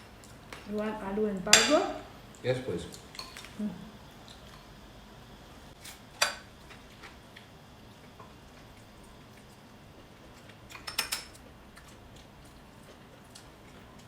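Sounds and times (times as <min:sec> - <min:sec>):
utensils clinking on plates: 0:10.7 - 0:11.4.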